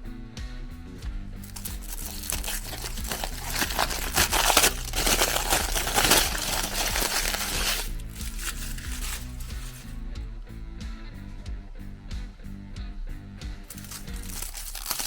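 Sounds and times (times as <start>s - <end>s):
background music: 0.0s - 15.0s
meat grinder crushing and crackling: 1.5s - 9.9s, 13.7s - 15.0s.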